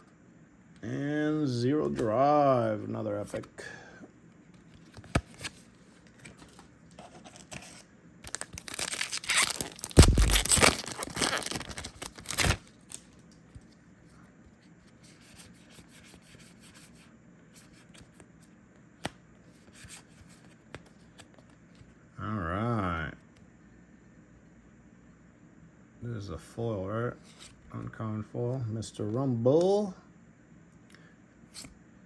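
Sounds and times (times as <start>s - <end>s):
card and wrapper clicks: 7.3s - 13.4s
foil wrapper tearing and crinkling: 8.2s - 13.1s.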